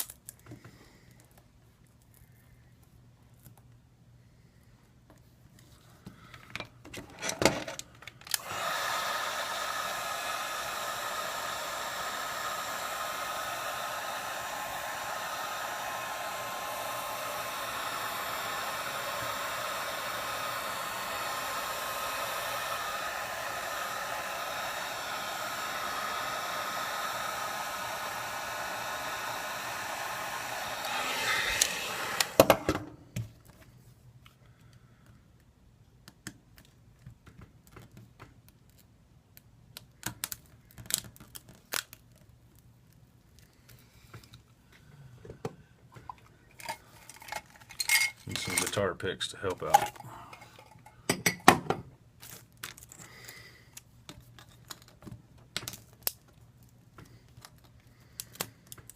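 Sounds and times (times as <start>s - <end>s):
hot-air blower running: 8.3s - 33.2s.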